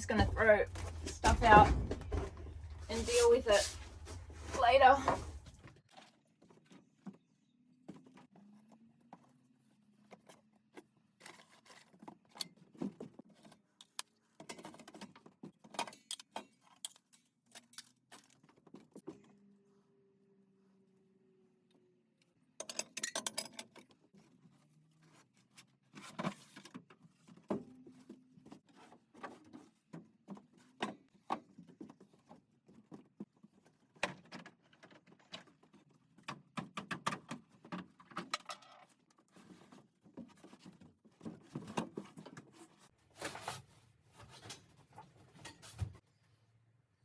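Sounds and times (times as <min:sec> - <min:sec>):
household items clattering: 0:00.0 - 0:06.8.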